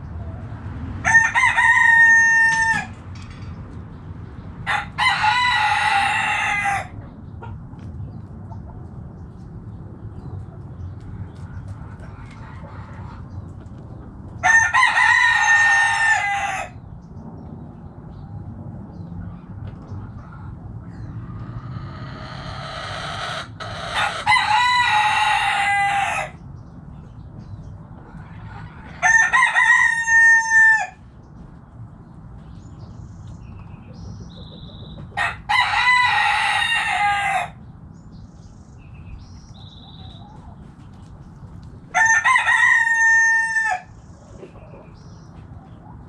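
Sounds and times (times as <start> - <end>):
roosters crowing: 0.3 - 3.6, 4.5 - 7.6, 11.2 - 13.4, 14.0 - 16.9, 20.1 - 26.5, 27.9 - 31.3, 33.4 - 37.7, 39.1 - 46.0.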